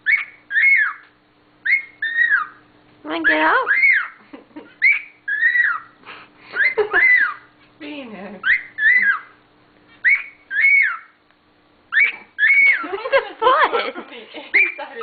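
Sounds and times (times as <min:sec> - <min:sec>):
cockatiel whistling: 0:00.0 - 0:02.6, 0:03.2 - 0:04.2, 0:04.8 - 0:06.0, 0:06.6 - 0:07.5, 0:08.4 - 0:09.4, 0:10.0 - 0:11.2, 0:11.9 - 0:12.9, 0:14.6 - 0:14.9.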